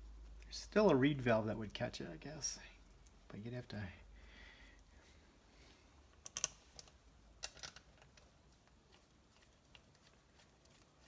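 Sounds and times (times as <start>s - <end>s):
small parts clicking: 6.1s - 8.3s.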